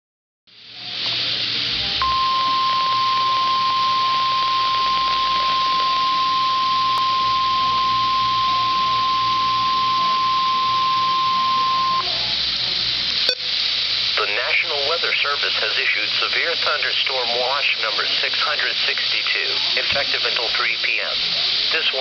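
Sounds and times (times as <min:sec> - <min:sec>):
radio static hiss: 0:00.5 - 0:22.0
steady high alarm tone: 0:02.0 - 0:12.2.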